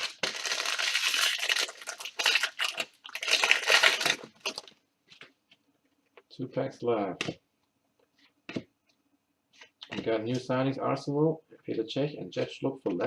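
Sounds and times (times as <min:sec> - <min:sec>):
plastic wrapper tearing and crinkling: 0:00.0 - 0:04.8.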